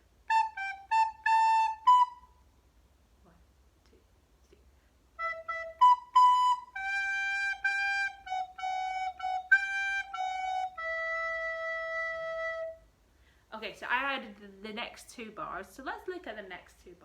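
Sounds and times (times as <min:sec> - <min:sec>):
recorder melody: 0:00.3 - 0:02.3, 0:05.2 - 0:12.8.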